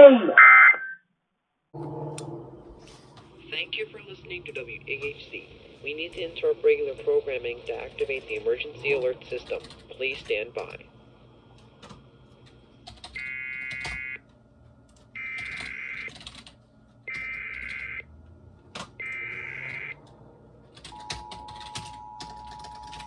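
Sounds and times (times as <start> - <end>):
two-tone attention signal: 0.2 - 1.0.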